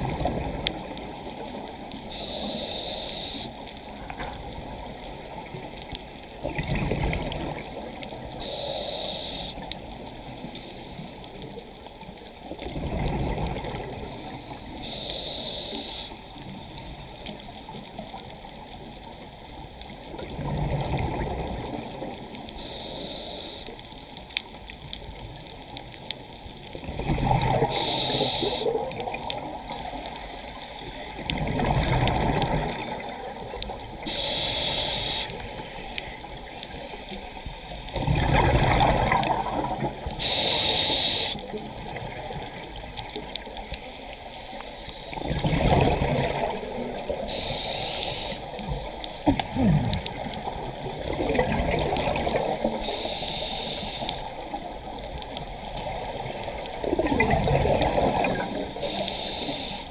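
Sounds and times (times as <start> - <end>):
exhaled bubbles rumbling: 0.0 - 2.1, 3.9 - 8.4, 12.4 - 14.4, 20.1 - 22.5, 26.8 - 30.3, 31.1 - 34.1, 37.9 - 40.2, 45.1 - 47.3, 48.6 - 52.9, 54.6 - 58.8
regulator inhale hiss: 1.3 - 3.8, 8.1 - 11.6, 14.0 - 16.5, 22.0 - 24.2, 27.5 - 31.2, 33.9 - 37.9, 39.2 - 41.7, 46.4 - 50.3, 52.2 - 55.0, 58.2 - 59.9.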